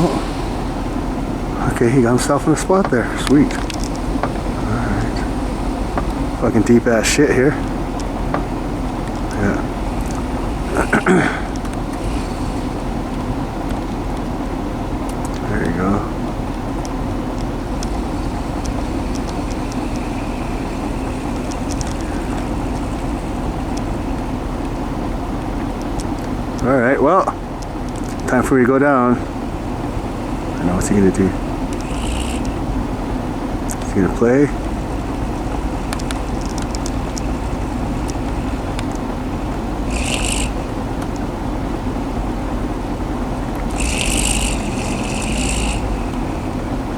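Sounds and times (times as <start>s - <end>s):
truck engine low drone: 0.0s - 46.9s
light clicks: 2.6s - 14.4s, 16.5s - 28.4s, 33.6s - 41.3s.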